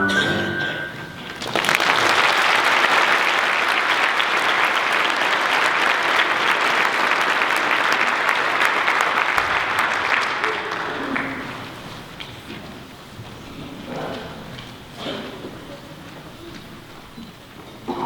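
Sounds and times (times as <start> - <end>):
audience applauding: 1.3 - 12.6.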